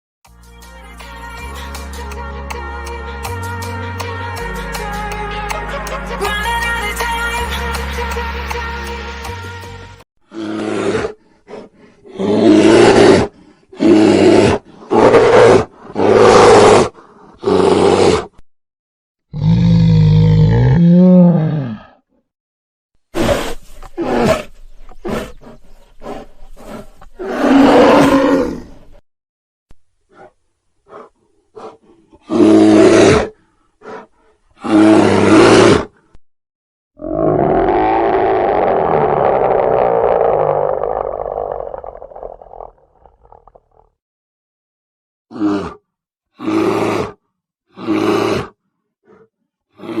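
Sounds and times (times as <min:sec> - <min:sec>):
background music: 0:00.3 - 0:10.0
bear growling: 0:10.3 - 0:18.4, 0:30.1 - 0:36.0, 0:37.0 - 0:43.8, 0:46.4 - 0:50.0
bear roaring: 0:10.3 - 0:18.4, 0:19.3 - 0:22.0, 0:23.2 - 0:28.9, 0:30.1 - 0:36.0, 0:37.0 - 0:43.8, 0:45.3 - 0:50.0
bear grunting: 0:30.1 - 0:35.9, 0:45.3 - 0:45.8, 0:46.4 - 0:50.0.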